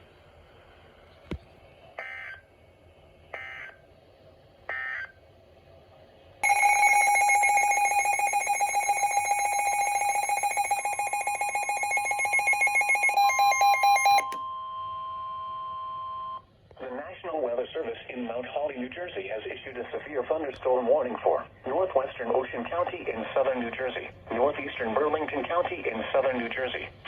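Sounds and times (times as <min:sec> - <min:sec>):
radio data tones: 0:06.4 - 0:14.4
receiver alarm beeping rapidly: 0:06.4 - 0:16.4
steady warning tone: 0:06.4 - 0:16.4.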